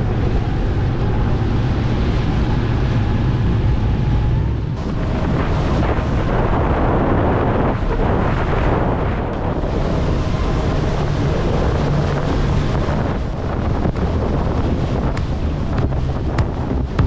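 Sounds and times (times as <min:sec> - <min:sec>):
boat engine running: 0:13.3 - 0:17.0.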